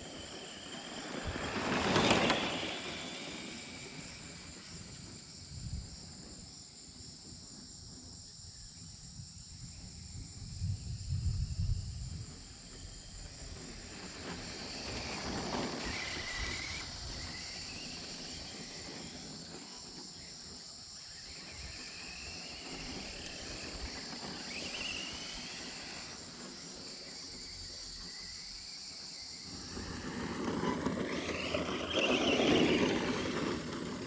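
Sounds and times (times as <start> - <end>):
toy truck electric motor whining: 0.0 - 5.4, 12.4 - 34.0.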